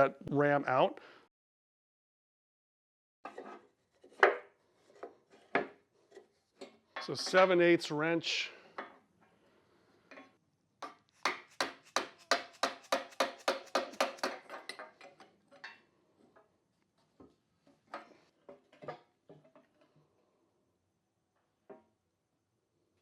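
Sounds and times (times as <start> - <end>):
wrench on metal fitting: 11.4 - 14.3.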